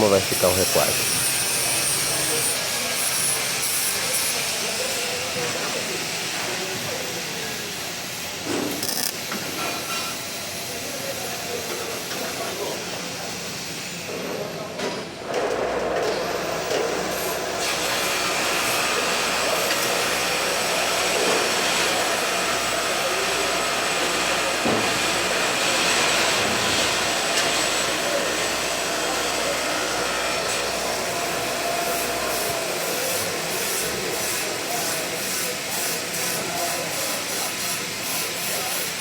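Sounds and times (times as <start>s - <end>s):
welder arc sizzling: 0.0s - 3.3s.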